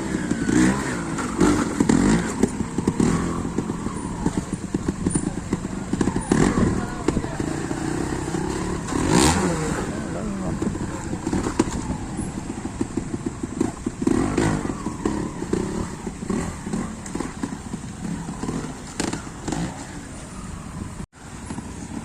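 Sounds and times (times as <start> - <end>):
motorcycle engine revving: 0.0 - 22.0.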